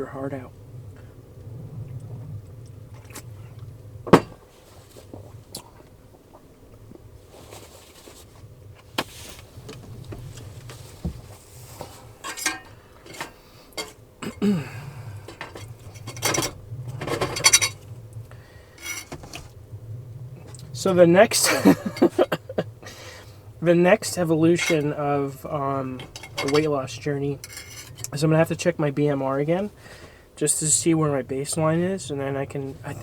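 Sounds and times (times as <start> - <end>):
fork scraping plate: 18.8 - 19.5, 24.5 - 25.0, 27.4 - 28.2.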